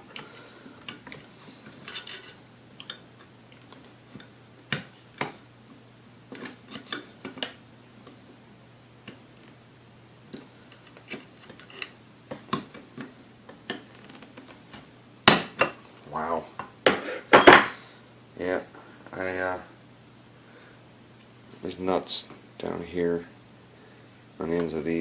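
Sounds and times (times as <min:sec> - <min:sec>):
metal tools clicking and tapping: 0:00.1 - 0:03.0.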